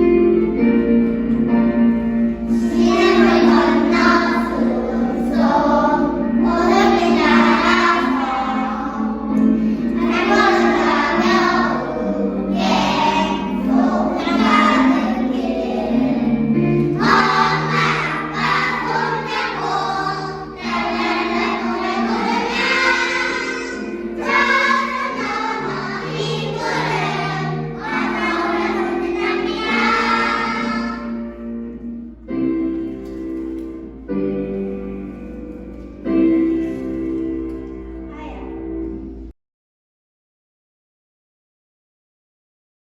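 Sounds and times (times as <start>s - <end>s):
instrumental accompaniment: 0.0s - 39.3s
children's choir singing: 2.3s - 31.4s.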